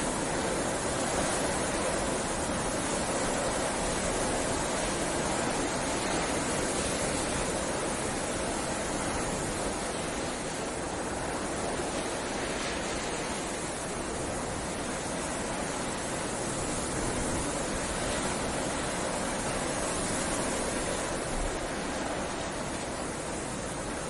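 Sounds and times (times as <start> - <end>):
snowstorm wind rushing: 0.0 - 24.0.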